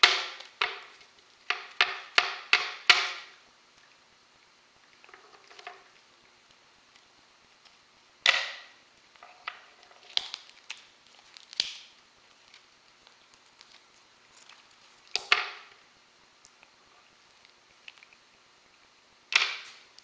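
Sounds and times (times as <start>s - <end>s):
wooden beads knocking on hard surface: 0.0s - 0.9s, 1.5s - 3.3s.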